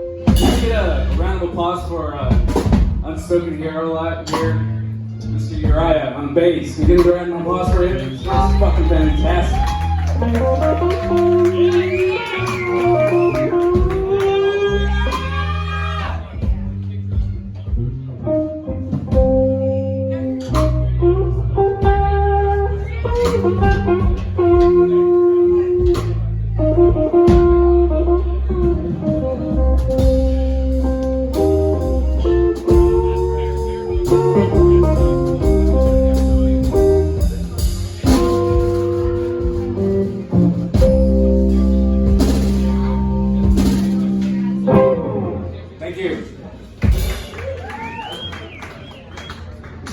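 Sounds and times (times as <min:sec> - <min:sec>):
moving bass line: 0:00.0 - 0:45.8
live blues band playing: 0:00.0 - 0:49.8
drum hits: 0:00.3 - 0:03.3, 0:05.6 - 0:05.9, 0:06.8 - 0:14.3, 0:26.9 - 0:27.8, 0:28.7 - 0:45.0, 0:46.8 - 0:47.6.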